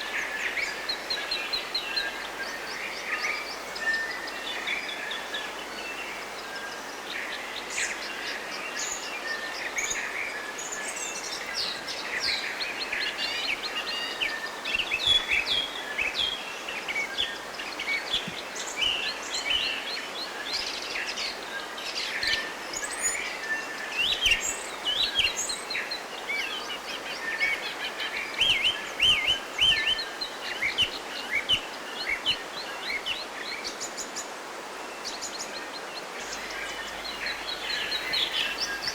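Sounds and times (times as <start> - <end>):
steady background hiss: 0.0 - 38.9
birds chirping: 35.1 - 38.9.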